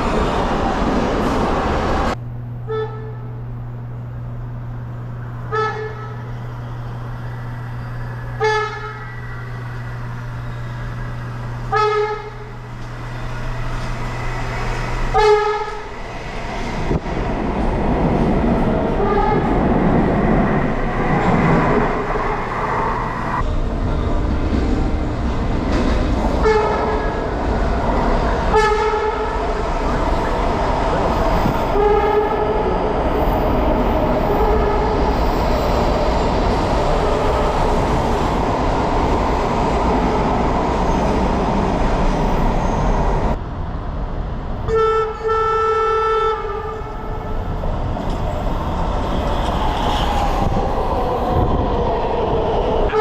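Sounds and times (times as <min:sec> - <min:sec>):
train rumbling on rails: 0:00.0 - 0:53.0
train horn honks: 0:02.6 - 0:03.5, 0:05.4 - 0:06.4, 0:08.3 - 0:10.0, 0:11.6 - 0:13.5, 0:14.2 - 0:15.9, 0:19.0 - 0:19.5, 0:26.4 - 0:27.3, 0:28.5 - 0:29.4, 0:31.4 - 0:32.8, 0:34.2 - 0:35.2, 0:44.6 - 0:47.6.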